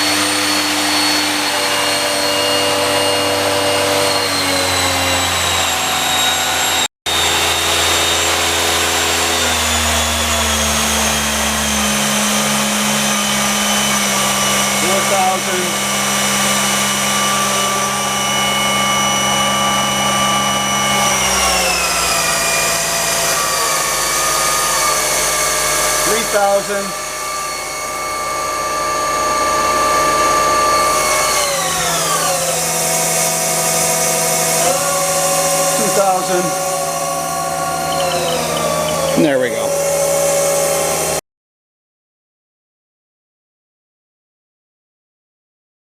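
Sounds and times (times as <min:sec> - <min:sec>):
lathe spindle whine: 0:00.0 - 0:41.2
low machine hum: 0:07.2 - 0:41.1.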